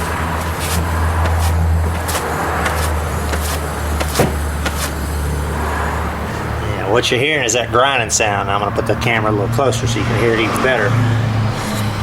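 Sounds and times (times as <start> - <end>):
wheel bearing grinding: 0.0 - 5.6
steady low hum: 0.0 - 7.0.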